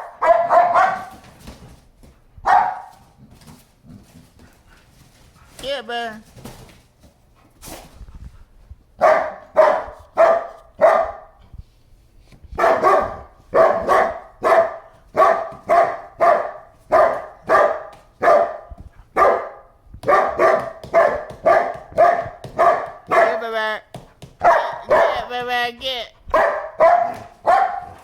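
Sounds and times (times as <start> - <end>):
dog barking: 0.0 - 1.3, 2.4 - 3.1, 9.0 - 11.4, 12.6 - 23.5, 24.4 - 25.3, 26.3 - 28.0.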